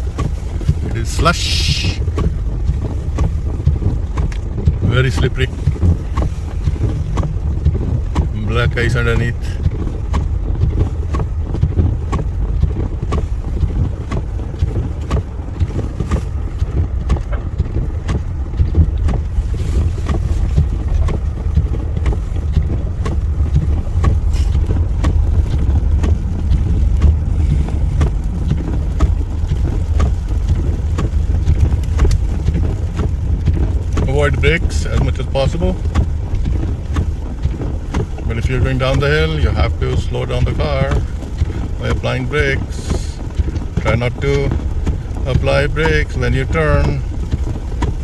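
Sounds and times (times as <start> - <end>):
car driving on slushy road: 0.0 - 48.0
small irregular clicks: 0.0 - 48.0.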